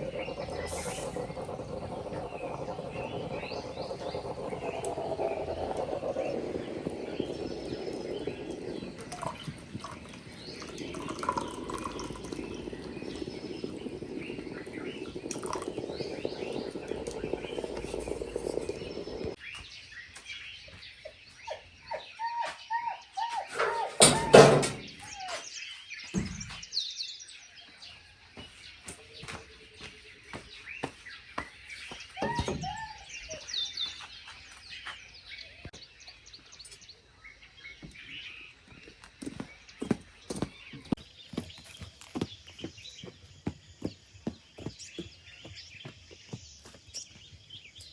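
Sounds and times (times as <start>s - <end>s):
birds chirping and calling: 0.0s - 27.5s, 29.1s - 47.9s.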